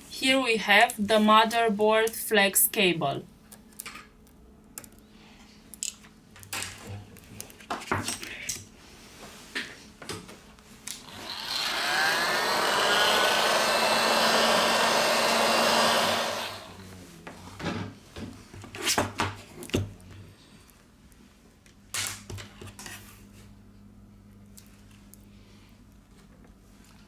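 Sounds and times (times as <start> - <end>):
electric air blower running: 11.0 - 16.9.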